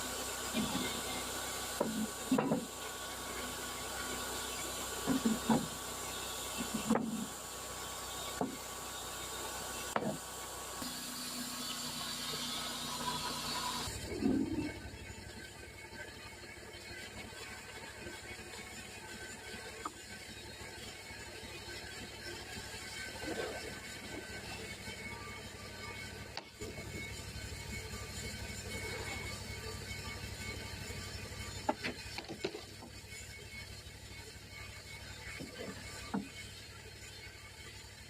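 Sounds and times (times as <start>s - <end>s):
band saw cutting log: 0.0s - 38.0s
sawmill machinery running: 0.0s - 38.0s.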